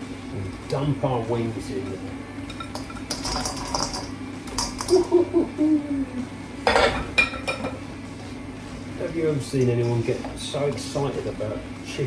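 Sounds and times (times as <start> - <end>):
chicken wings clattering in metal pan: 2.7 - 5.1.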